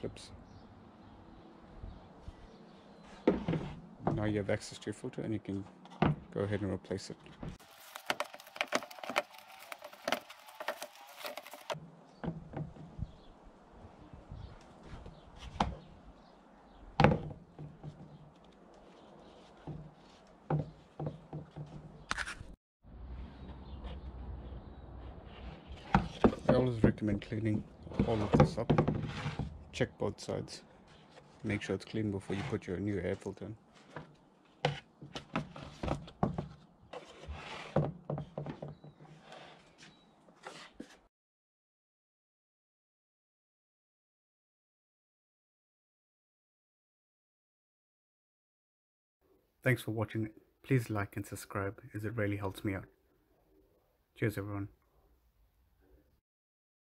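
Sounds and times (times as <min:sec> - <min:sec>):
rustling and wiping: 0:07.3 - 0:11.8, 0:17.8 - 0:21.8, 0:24.9 - 0:26.7.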